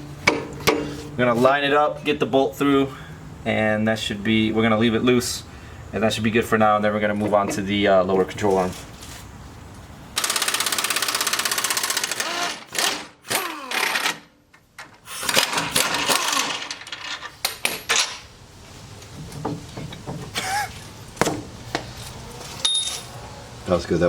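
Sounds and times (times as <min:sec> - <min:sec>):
metal clanks: 0:00.2 - 0:01.1
pneumatic impact wrench rattling: 0:10.2 - 0:14.3, 0:14.9 - 0:18.2.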